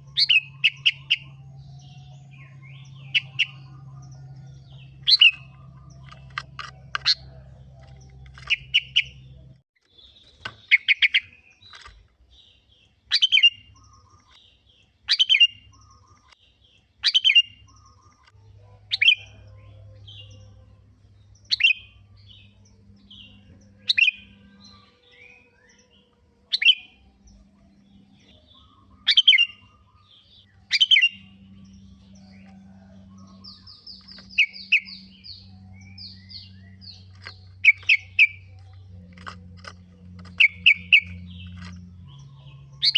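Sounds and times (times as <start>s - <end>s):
bird chirping: 0.0s - 42.9s.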